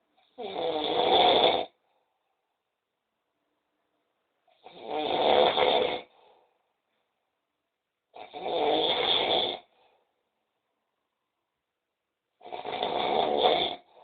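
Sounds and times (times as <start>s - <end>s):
person snoring loudly: 0.3s - 1.8s, 4.6s - 6.2s, 8.2s - 9.8s, 12.4s - 14.0s.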